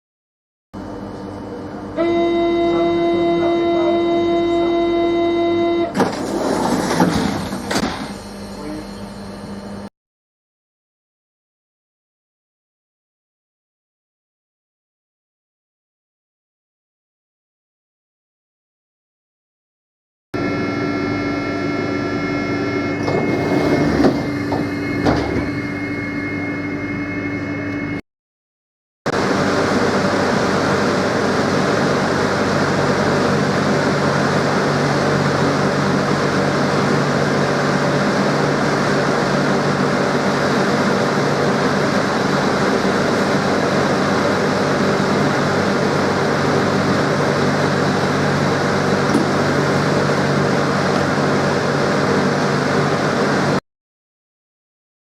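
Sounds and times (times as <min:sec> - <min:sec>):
train noise with low hum: 0:01.7 - 0:09.0, 0:23.0 - 0:26.0
train door warning buzzer: 0:01.9 - 0:09.9, 0:20.4 - 0:28.0, 0:47.4 - 0:51.1.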